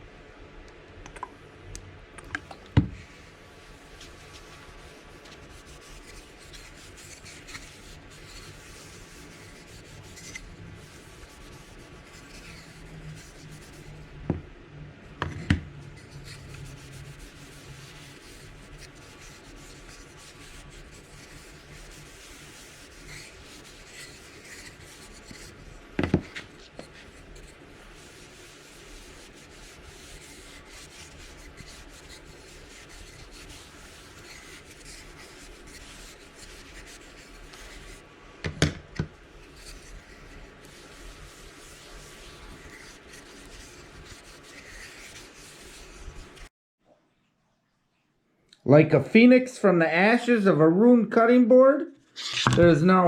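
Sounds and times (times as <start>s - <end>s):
wood rubbed by hand scratching: 3.8s - 14.2s, 15.8s - 38.1s, 39.2s - 46.5s.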